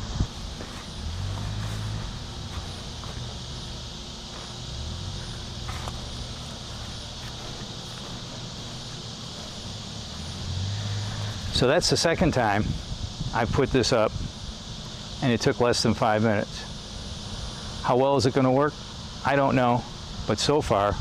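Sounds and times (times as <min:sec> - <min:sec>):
wind gusts rumbling on microphone: 0:00.0 - 0:14.8
steady high hiss: 0:00.0 - 0:21.0.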